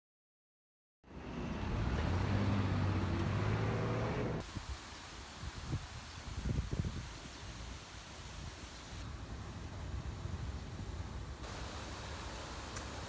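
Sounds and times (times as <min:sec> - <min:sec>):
road noise: 0:01.0 - 0:05.8
wind: 0:01.0 - 0:13.0.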